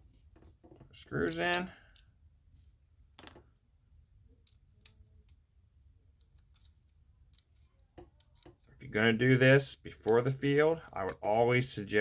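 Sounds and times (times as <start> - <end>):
small screws and tool clicking: 4.3 - 5.5, 6.1 - 8.8, 10.0 - 11.2.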